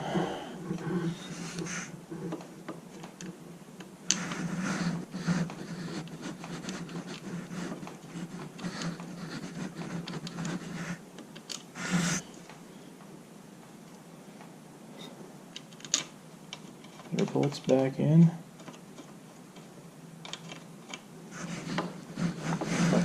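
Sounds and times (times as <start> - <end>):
metal parts clicking and scraping: 15.6 - 17.7, 20.2 - 21.0.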